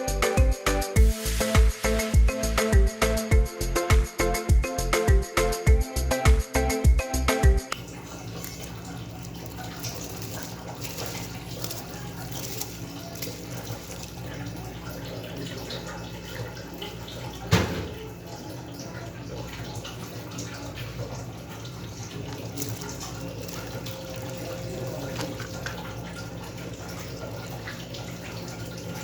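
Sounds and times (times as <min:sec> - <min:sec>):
food sizzling and bubbling in pot: 0:07.7 - 0:29.0
fine crackles: 0:07.8 - 0:15.0, 0:21.9 - 0:26.0.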